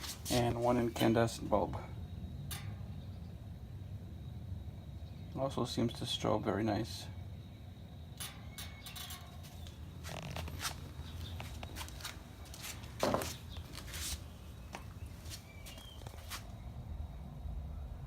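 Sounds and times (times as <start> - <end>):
steady low hum: 0.0 - 18.0
handling clicks and rustles: 8.3 - 16.5.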